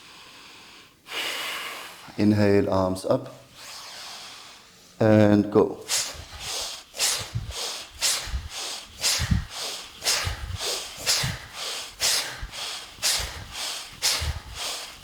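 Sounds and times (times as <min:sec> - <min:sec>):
rapid forceful breathing: 0:05.8 - 0:15.0.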